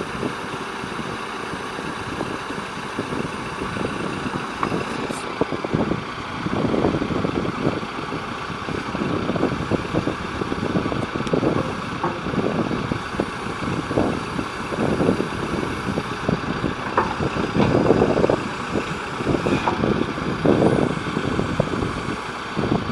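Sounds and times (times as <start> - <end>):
diesel engine running: 0.0 - 22.9.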